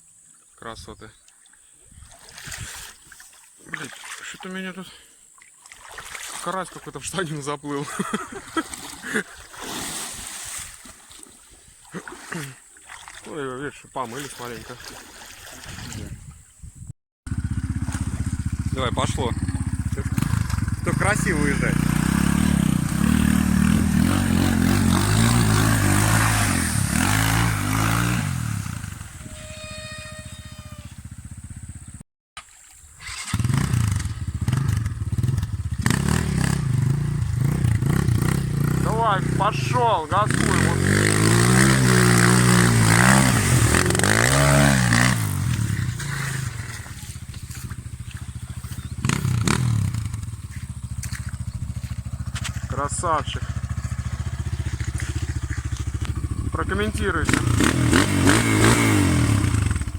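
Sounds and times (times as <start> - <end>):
motorcycle engine revving: 17.3 - 32.0, 33.0 - 59.9.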